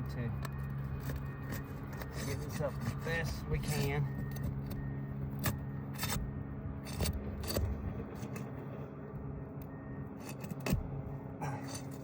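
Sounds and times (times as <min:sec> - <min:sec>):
steady low hum: 0:00.0 - 0:12.0
pry bar scraping roof shingles: 0:00.9 - 0:06.2.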